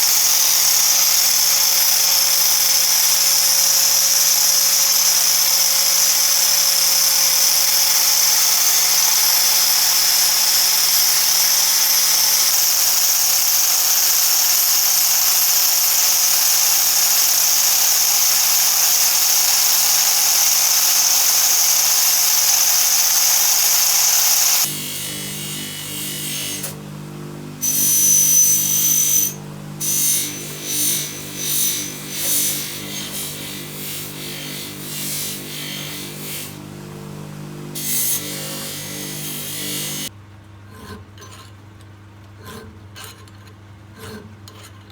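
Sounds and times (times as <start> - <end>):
small electric power tool running: 0.0 - 40.1.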